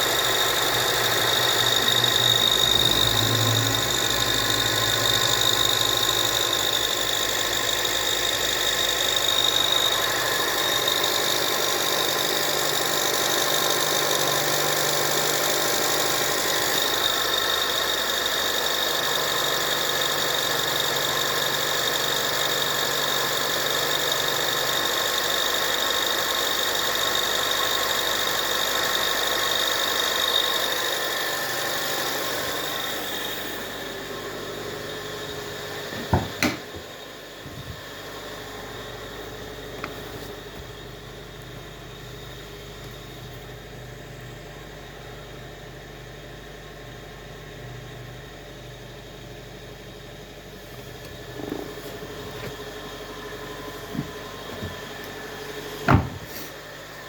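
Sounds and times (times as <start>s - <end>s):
high-pitched engine squeal: 0.0s - 12.9s
turbo engine idling: 0.0s - 24.4s, 25.2s - 57.0s.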